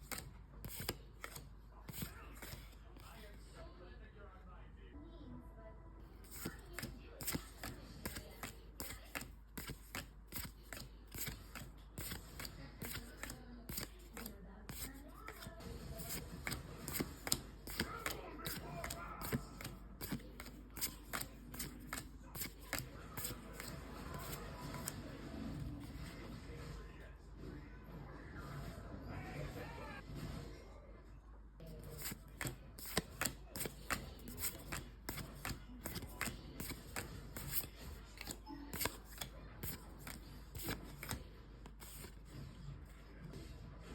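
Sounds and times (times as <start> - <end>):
cards flicking and snapping: 0.0 - 3.2, 6.2 - 25.2, 31.8 - 42.3.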